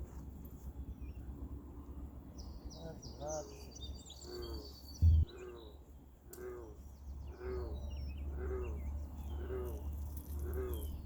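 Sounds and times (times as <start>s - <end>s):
low bird call: 4.2s - 5.8s
high bird chirps: 4.9s - 5.5s.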